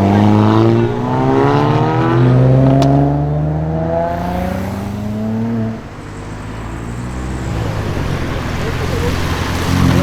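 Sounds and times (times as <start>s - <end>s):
car engine accelerating: 0.0s - 10.0s
rough exhaust noise: 4.0s - 7.6s.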